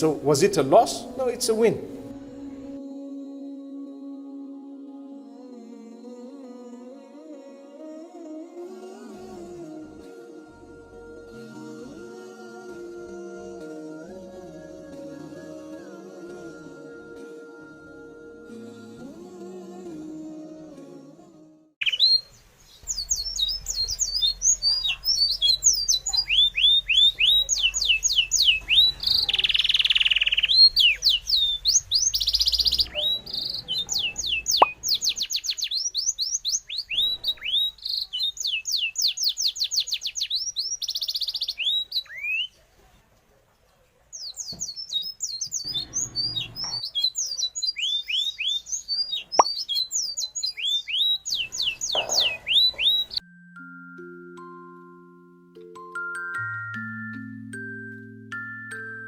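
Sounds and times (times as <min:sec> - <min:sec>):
small birds chirping rapidly: 0:21.8 - 0:42.6, 0:44.1 - 0:53.2.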